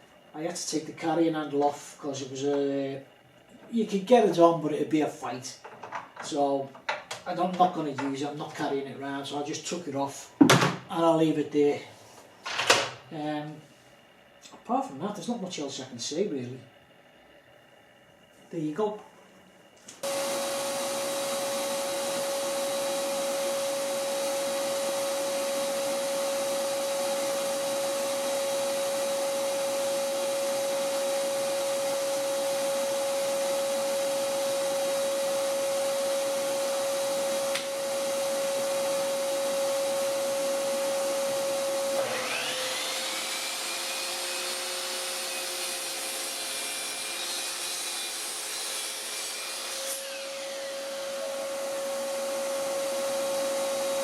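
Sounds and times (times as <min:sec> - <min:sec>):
dust extraction vacuum humming: 0:06.2 - 0:54.0
miter saw motor whine: 0:20.0 - 0:30.4, 0:40.6 - 0:45.8.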